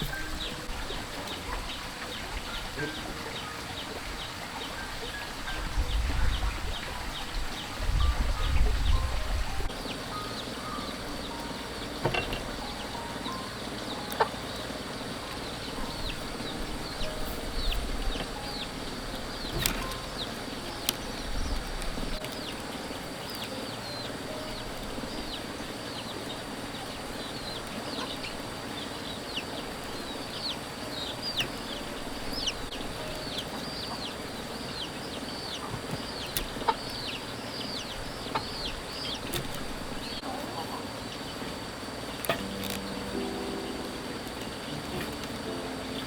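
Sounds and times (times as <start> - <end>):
small birds chirping: 0.0 - 46.0
sharp clicks: 19.4 - 22.5.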